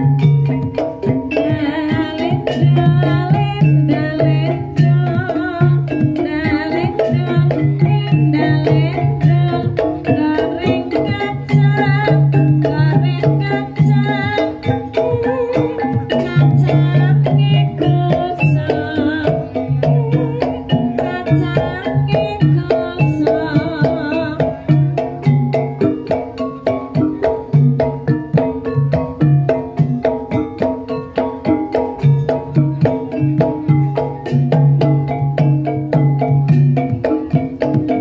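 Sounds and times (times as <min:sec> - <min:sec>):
hand drums: 0:00.0 - 0:38.0
pitched percussion: 0:00.0 - 0:38.0
woman singing with vibrato: 0:01.3 - 0:25.4.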